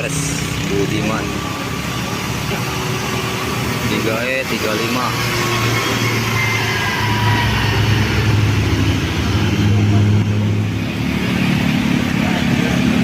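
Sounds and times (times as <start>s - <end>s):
bus diesel engine passing: 0.0s - 13.0s.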